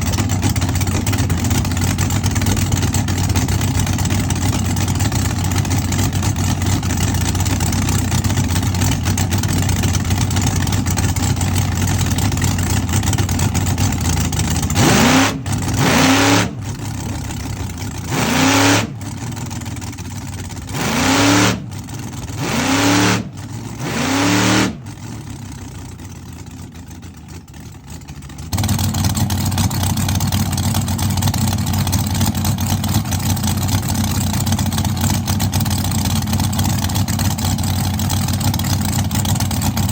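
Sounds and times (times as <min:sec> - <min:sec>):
engine throttle blips: 0:00.0 - 0:26.1
car engine running: 0:00.0 - 0:39.9.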